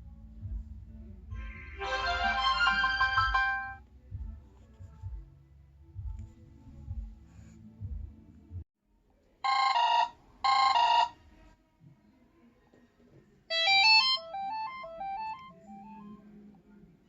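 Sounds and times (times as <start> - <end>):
phone ringtone: 1.6 - 3.8, 9.5 - 11.2, 13.5 - 16.3
electronic notes stepping up and down: 13.5 - 16.1.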